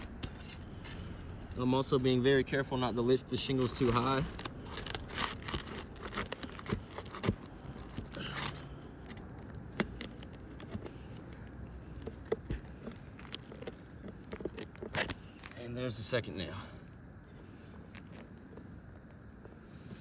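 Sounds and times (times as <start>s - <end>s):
flat bar scraping under shingles: 0.0s - 15.6s
nail clicks and crackles: 3.4s - 15.7s, 16.8s - 20.0s.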